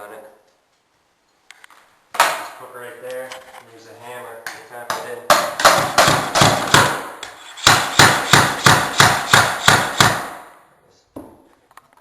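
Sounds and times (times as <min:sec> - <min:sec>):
hammer knocking on tool: 0:04.5 - 0:07.0, 0:07.6 - 0:10.3.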